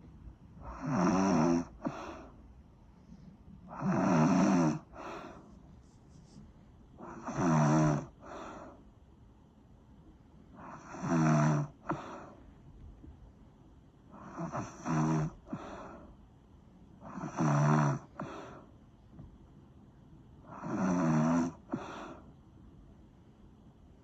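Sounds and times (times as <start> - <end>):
person snoring: 0.6 - 2.3, 3.7 - 5.4, 7.0 - 8.7, 10.6 - 12.4, 14.1 - 16.0, 17.0 - 18.7, 20.5 - 22.2.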